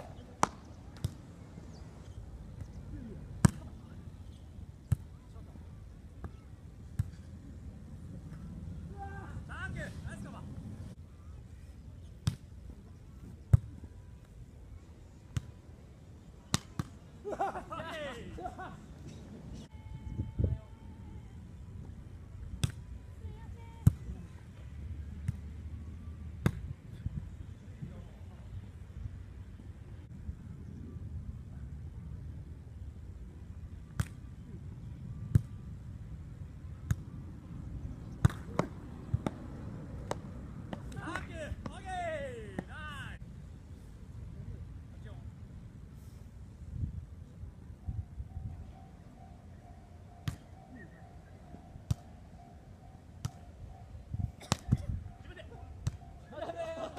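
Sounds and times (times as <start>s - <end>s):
volleyball slaps: 0.4s - 1.2s, 3.4s - 3.7s, 38.2s - 39.4s.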